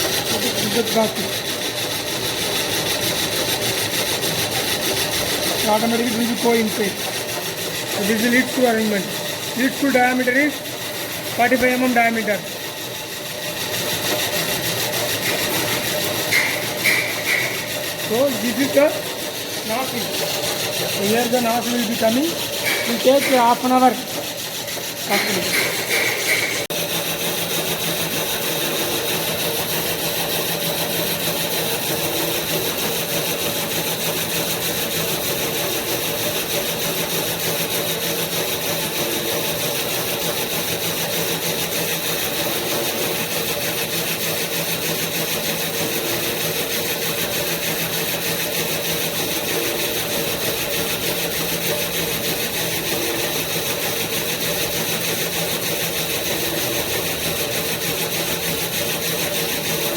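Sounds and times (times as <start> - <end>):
filament extruder motor running: 0.0 - 59.9.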